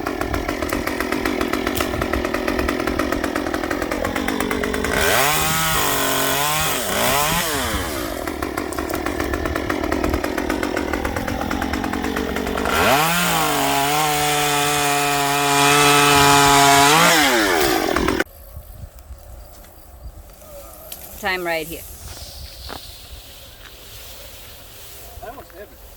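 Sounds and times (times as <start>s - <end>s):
chainsaw revving: 0.0s - 18.2s
chainsaw cutting wood: 0.0s - 18.3s.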